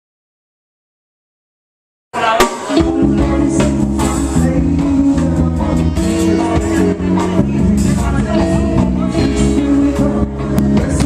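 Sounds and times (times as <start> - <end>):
reggae band playing: 2.1 - 11.0
bass guitar: 2.2 - 11.0
drum kit beat: 2.2 - 11.0.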